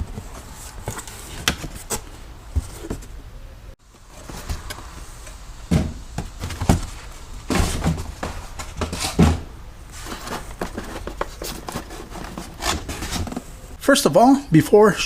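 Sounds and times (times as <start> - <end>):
rustling: 0.0 - 3.2, 3.8 - 13.8
dull thumps and knocks: 5.7 - 9.5.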